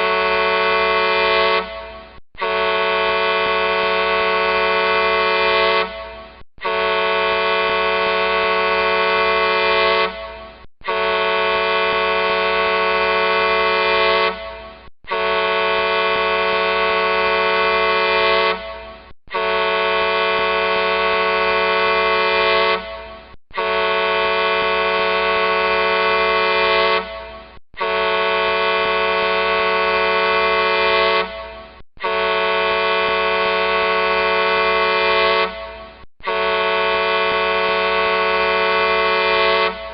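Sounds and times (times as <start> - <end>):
truck air horn blasts: 0.0 - 39.9.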